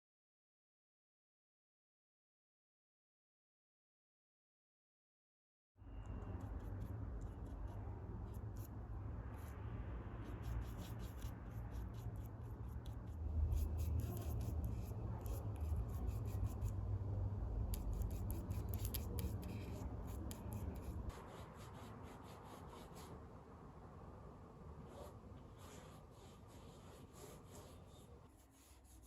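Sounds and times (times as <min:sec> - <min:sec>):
light scratching and rubbing: 0:10.2 - 0:16.8, 0:17.7 - 0:23.2, 0:24.8 - 0:29.0.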